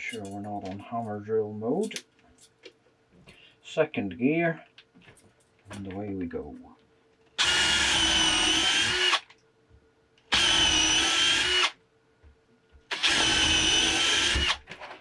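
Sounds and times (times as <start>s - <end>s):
cordless drill drilling into wood: 7.4s - 9.2s, 10.3s - 11.8s, 12.9s - 14.7s.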